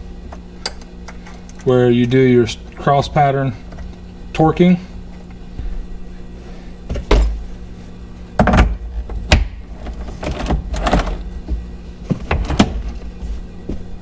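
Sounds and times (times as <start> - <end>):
tools and parts clunking: 6.9 - 7.6, 8.4 - 13.3
knocks and clicks: 8.4 - 13.0.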